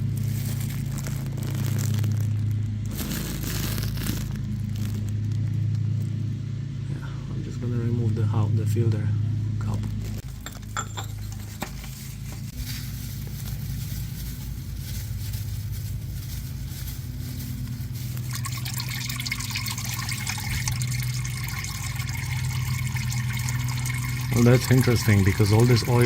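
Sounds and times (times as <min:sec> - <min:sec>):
engine oil trickling and splashing: 0:00.0 - 0:06.2, 0:10.0 - 0:26.0
steady low hum: 0:00.0 - 0:26.0.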